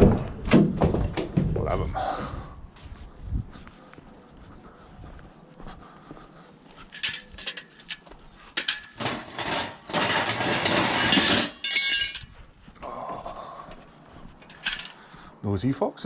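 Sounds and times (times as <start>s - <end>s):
scrap metal clanking: 6.9s - 12.4s, 14.4s - 15.1s
scraping rattling metal crash: 8.6s - 12.2s.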